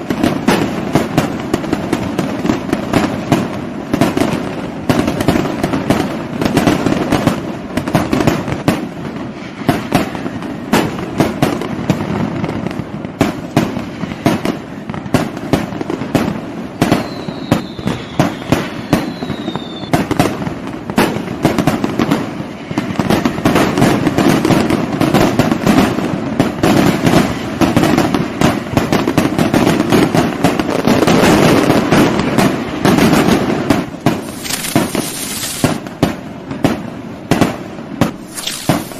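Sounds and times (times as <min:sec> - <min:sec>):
fireworks bangs and crackles: 0:00.0 - 0:38.9
descending firework whistle: 0:16.6 - 0:20.4, 0:38.1 - 0:38.9.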